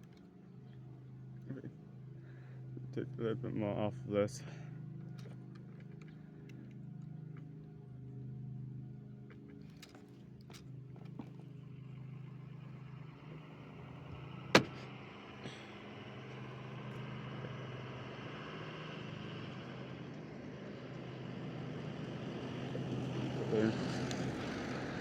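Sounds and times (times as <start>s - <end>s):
low mechanical hum: 0.0s - 25.0s
loud sharp click: 14.6s - 14.8s.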